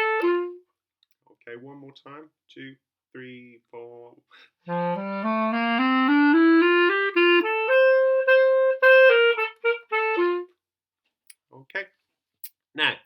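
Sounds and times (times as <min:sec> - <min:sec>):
solo clarinet: 0:00.0 - 0:00.6, 0:04.6 - 0:10.6.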